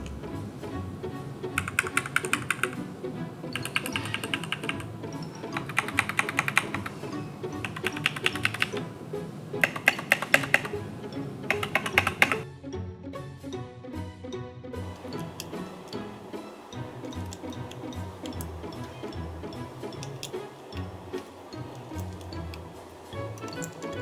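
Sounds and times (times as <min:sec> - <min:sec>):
background music: 0:00.0 - 0:24.0
mechanical keyboard clicking: 0:01.6 - 0:02.9, 0:03.5 - 0:08.8, 0:09.6 - 0:12.4, 0:17.0 - 0:24.0.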